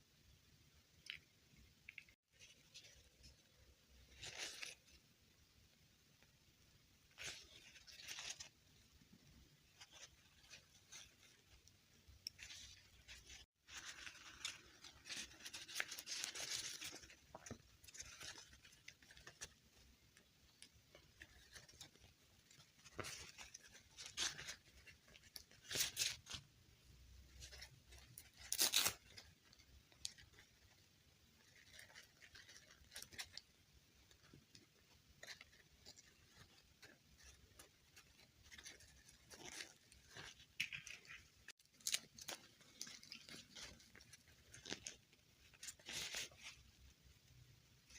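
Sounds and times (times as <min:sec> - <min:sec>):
packaging rustling and crinkling: 0:09.8 - 0:19.6.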